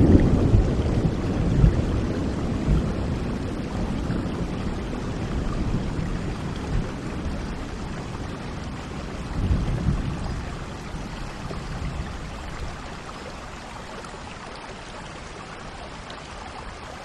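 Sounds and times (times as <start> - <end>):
low rumble of thunder: 0.0 - 13.6
steady rainfall: 0.0 - 17.0.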